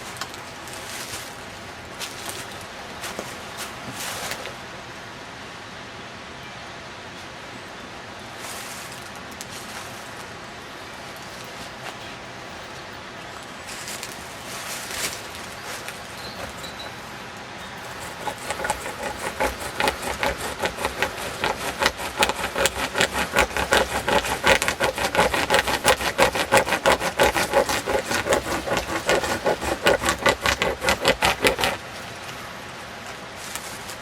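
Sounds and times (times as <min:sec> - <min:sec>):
chain rasping through wood: 0:16.2 - 0:32.2.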